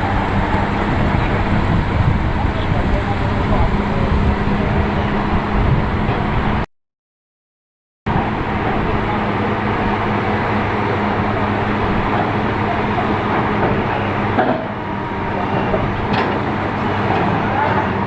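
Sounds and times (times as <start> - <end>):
drilling rig engine running: 0.0 - 6.6, 8.1 - 18.0.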